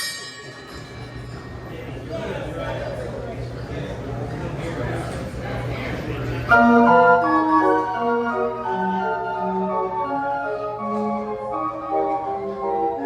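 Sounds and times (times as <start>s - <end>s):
band organ playing: 6.5s - 13.0s.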